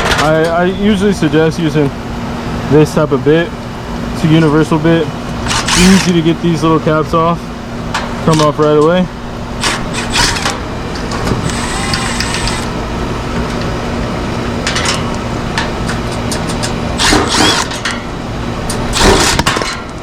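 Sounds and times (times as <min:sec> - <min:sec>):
steady mechanical hum: 0:00.0 - 0:20.0
cordless driver whirring: 0:09.6 - 0:10.6, 0:11.3 - 0:12.7, 0:17.0 - 0:17.8.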